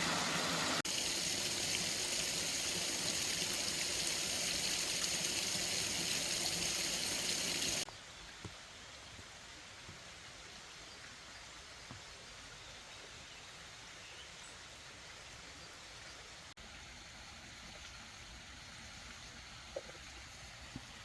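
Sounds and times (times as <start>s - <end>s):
distant stream flowing: 0.0s - 7.9s.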